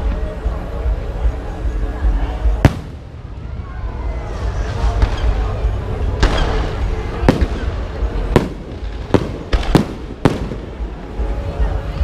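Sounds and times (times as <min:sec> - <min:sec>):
firework crackling: 0:02.4 - 0:12.0
firework bangs: 0:02.6 - 0:11.4.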